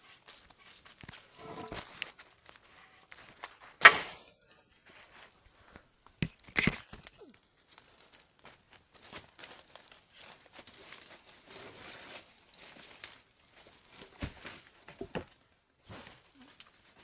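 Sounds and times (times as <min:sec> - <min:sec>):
small rustles and clicks: 0:00.0 - 0:17.0
sharp scrape: 0:01.2 - 0:02.0, 0:03.8 - 0:04.2.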